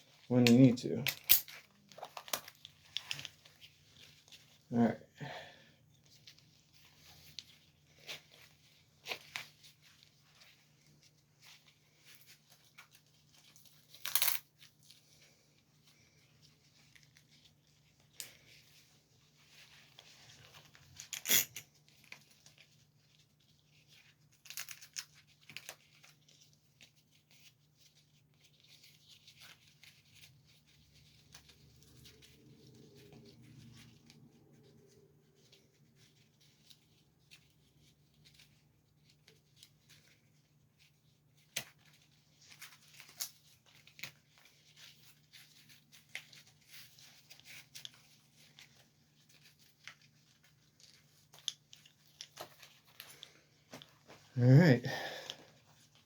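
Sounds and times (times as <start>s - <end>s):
harness straps rustling and scraping: 0.0s - 56.0s
buckle clacks: 0.4s - 3.3s.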